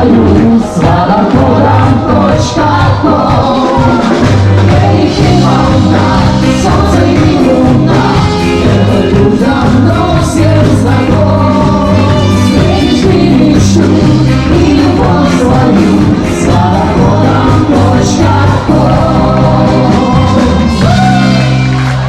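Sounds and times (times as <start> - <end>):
song with bass and beat: 0.0 - 22.0
voices singing: 0.0 - 22.0.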